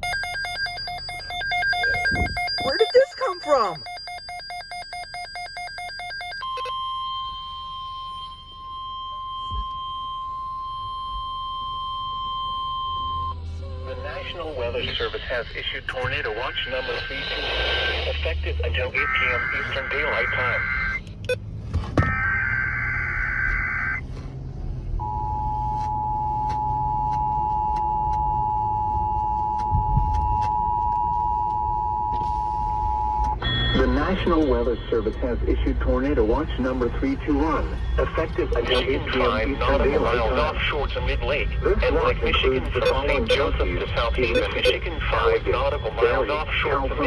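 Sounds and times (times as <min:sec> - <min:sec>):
warbling data tone: 0:00.0 - 0:06.8, 0:42.7 - 0:44.8
steady electronic warning tone: 0:00.0 - 0:15.1, 0:36.6 - 0:40.9, 0:42.6 - 0:46.4.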